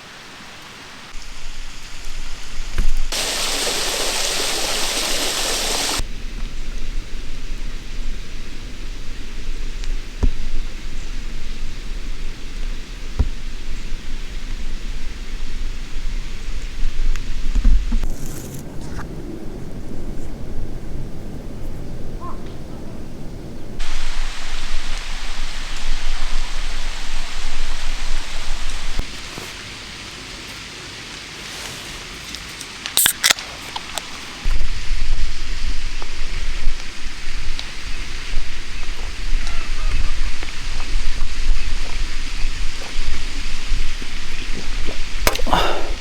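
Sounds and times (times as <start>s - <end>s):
steady outdoor hiss: 0.0s - 46.0s
low rumble on microphone: 34.4s - 46.0s.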